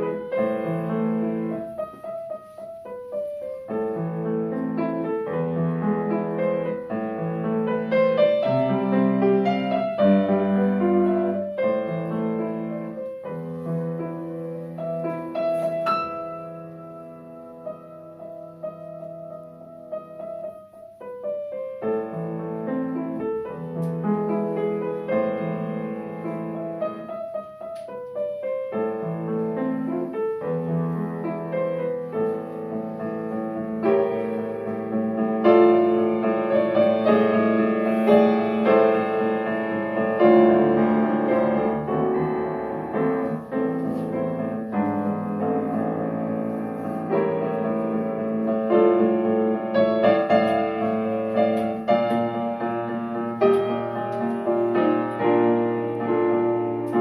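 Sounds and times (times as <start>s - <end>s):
solo classical piano piece: 0.0s - 57.0s.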